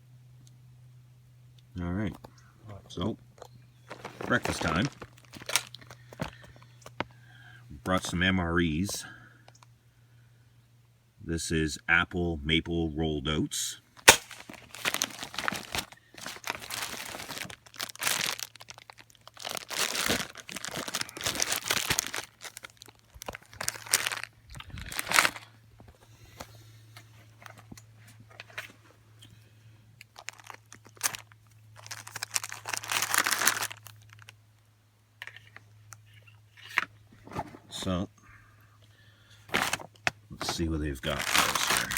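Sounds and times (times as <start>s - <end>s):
plastic pouch tearing and crinkling: 3.9s - 7.0s, 14.0s - 25.5s, 30.0s - 34.4s, 39.5s - 41.9s
sharp crack: 14.0s - 15.8s.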